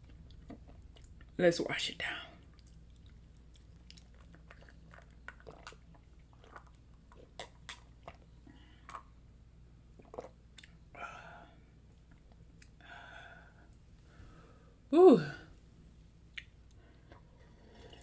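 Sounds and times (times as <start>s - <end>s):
person chewing: 2.5s - 9.1s, 10.0s - 10.8s.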